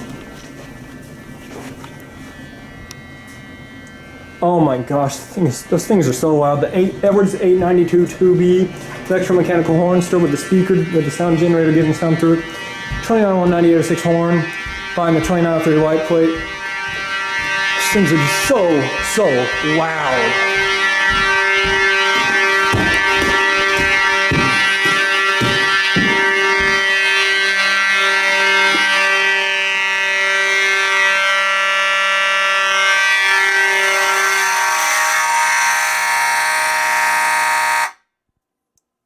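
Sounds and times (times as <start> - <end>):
fire alarm horns blaring: 0.0 - 38.1
low pulsing beat: 5.5 - 31.0.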